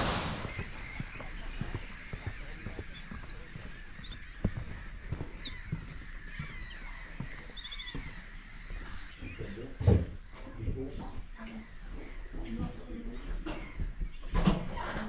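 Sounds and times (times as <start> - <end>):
songbird singing: 0.0 - 9.8.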